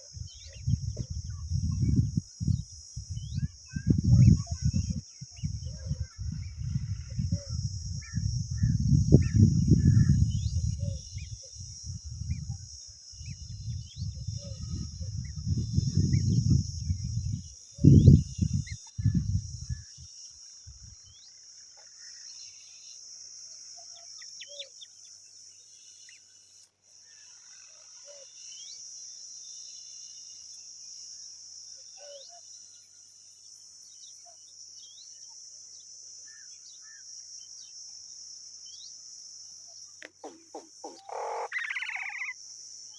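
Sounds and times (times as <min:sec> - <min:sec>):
bird chirps: 0:39.8 - 0:42.4.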